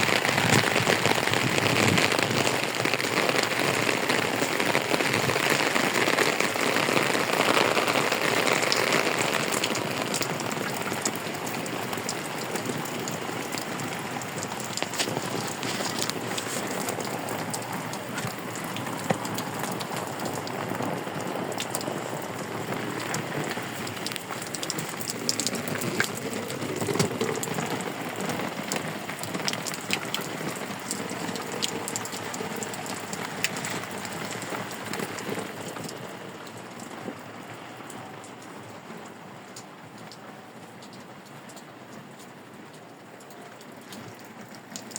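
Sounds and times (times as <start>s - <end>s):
steady rain falling: 0.0s - 44.9s
drops ticking on a surface: 9.4s - 20.6s.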